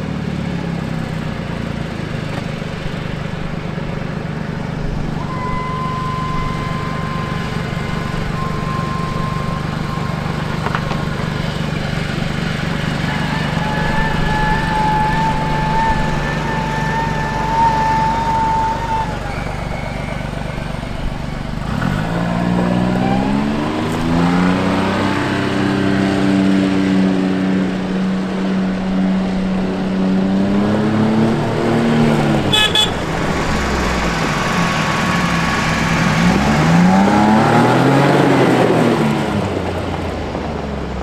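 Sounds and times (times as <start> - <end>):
utility vehicle engine droning: 0.0 - 41.0
short high beep: 5.2 - 12.2, 32.5 - 33.0.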